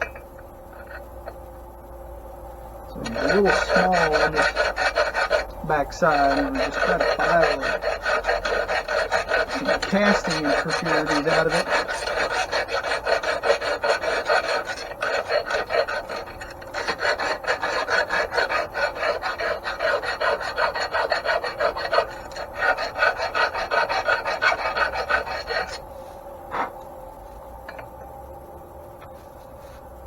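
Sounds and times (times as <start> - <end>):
hand file rasping on metal: 2.9 - 25.8.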